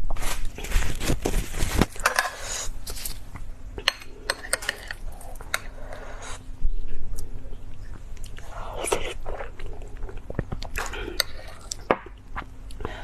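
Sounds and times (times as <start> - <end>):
rustling: 0.0 - 3.3
utensils clinking against dishes: 3.8 - 5.7.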